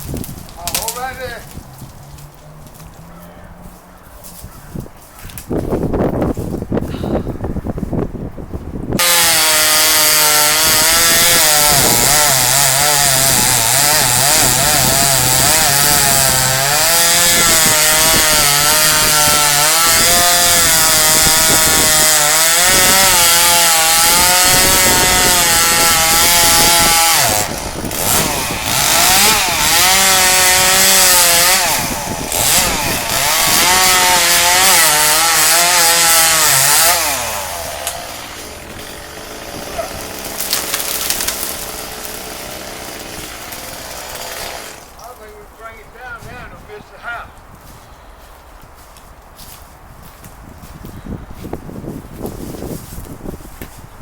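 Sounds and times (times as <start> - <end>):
chainsaw cutting wood: 0.0 - 3.1, 9.0 - 45.2.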